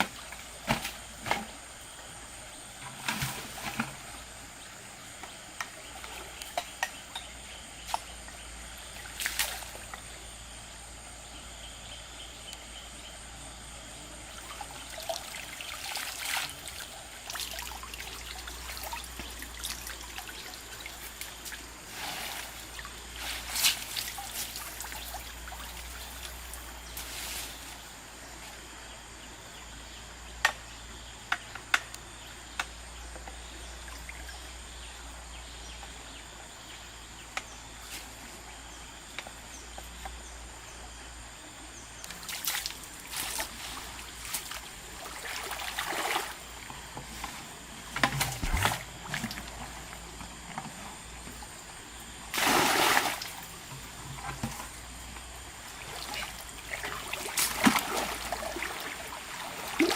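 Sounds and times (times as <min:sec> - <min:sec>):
river water running: 0:00.0 - 0:30.3, 0:40.5 - 0:59.9
water splashes: 0:14.4 - 0:26.8, 0:42.1 - 0:46.9, 0:48.0 - 0:50.0, 0:52.3 - 0:54.8, 0:55.6 - 0:59.9.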